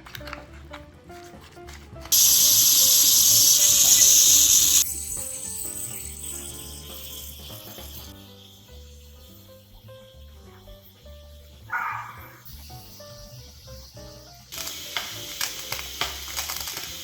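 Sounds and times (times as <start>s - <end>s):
light background music: 0.0s - 17.0s
loud steady hiss: 2.1s - 9.3s, 12.5s - 17.0s
faint hiss: 2.2s - 9.7s.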